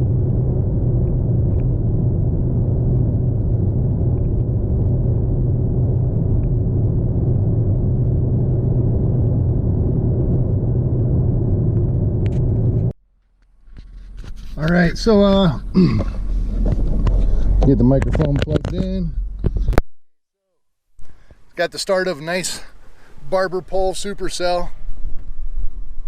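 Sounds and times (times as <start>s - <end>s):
car engine and road drone: 0.0s - 19.9s.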